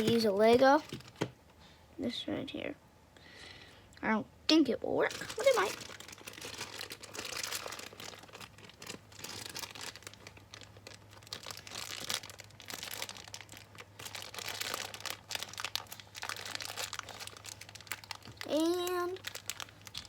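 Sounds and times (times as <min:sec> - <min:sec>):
plastic packaging crinkling: 0:00.0 - 0:01.3, 0:05.0 - 0:20.0.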